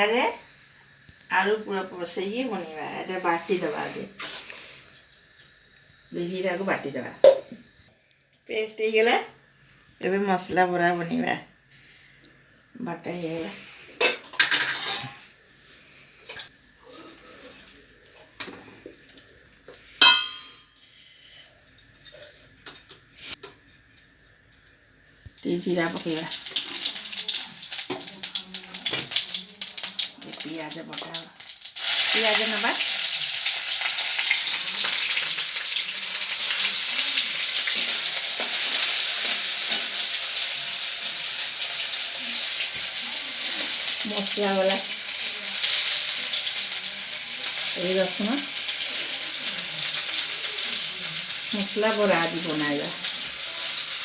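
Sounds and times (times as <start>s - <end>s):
utensils and dishes clinking: 13.4s - 24.8s, 34.2s - 54.0s
onions sizzling in hot oil: 25.4s - 54.0s.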